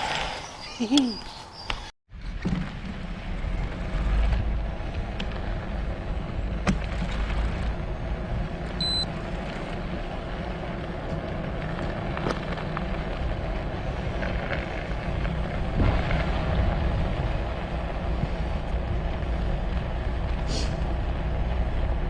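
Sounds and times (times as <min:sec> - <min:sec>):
wind and tyre rumble: 0:00.0 - 0:22.0
short high beep: 0:08.8 - 0:09.1.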